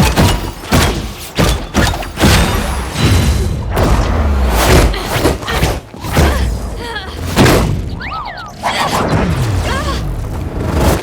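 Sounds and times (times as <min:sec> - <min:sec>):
punch and hit impacts: 0:00.0 - 0:06.6.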